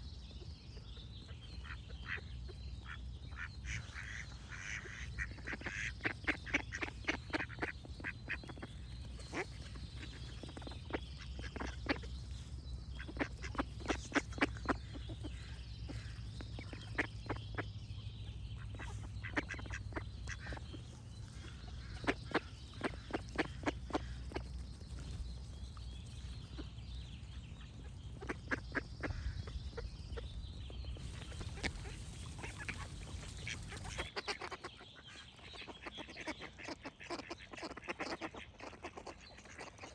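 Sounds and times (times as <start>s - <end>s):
steady low hum: 0.0s - 34.2s
faint birds singing: 0.0s - 39.9s
ducks quacking: 1.6s - 12.1s, 18.6s - 24.6s, 27.6s - 30.3s, 30.9s - 39.9s.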